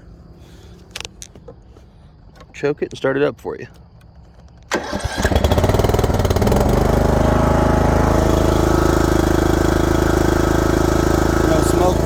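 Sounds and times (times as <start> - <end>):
mower engine running: 4.7 - 12.0.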